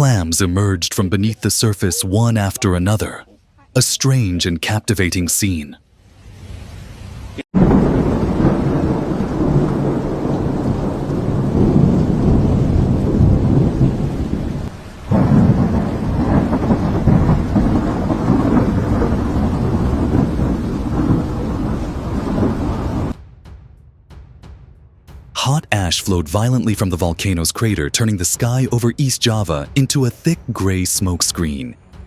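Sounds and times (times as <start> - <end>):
heavy rain: 3.8 - 23.2
thunder: 7.6 - 25.4.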